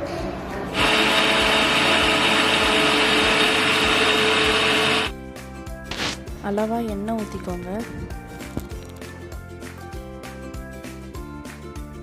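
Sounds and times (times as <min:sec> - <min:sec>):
electric mixer grinder running: 0:00.7 - 0:05.1.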